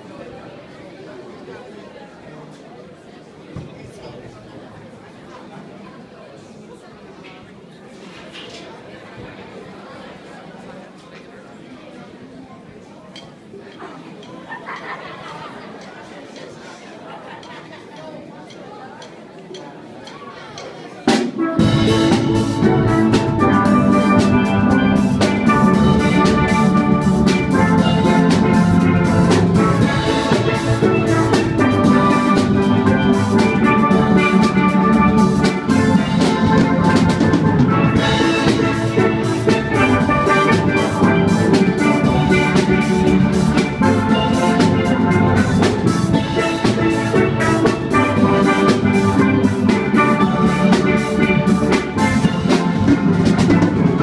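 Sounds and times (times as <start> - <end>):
steel pan band playing: 20.0 - 54.0
drum kit beat: 20.6 - 54.0.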